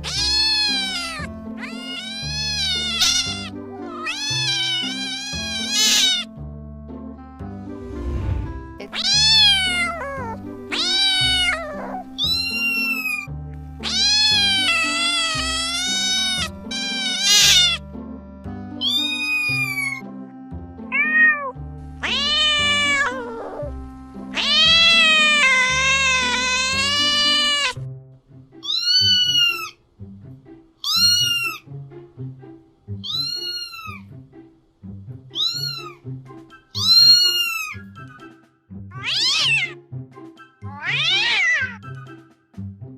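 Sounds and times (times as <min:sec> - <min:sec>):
kitten meowing: 0:00.0 - 0:06.3, 0:08.8 - 0:17.8, 0:18.8 - 0:20.0, 0:20.9 - 0:23.7, 0:24.3 - 0:27.8, 0:28.6 - 0:29.8, 0:30.8 - 0:31.6, 0:33.0 - 0:34.1, 0:35.3 - 0:36.0, 0:36.8 - 0:37.9, 0:39.0 - 0:39.8, 0:40.7 - 0:41.8
background music: 0:00.0 - 0:42.9.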